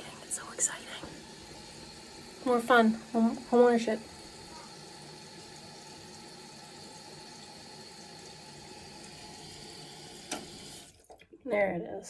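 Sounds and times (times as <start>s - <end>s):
water hissing into toilet tank: 0.0s - 11.2s
fill valve click: 10.1s - 10.8s.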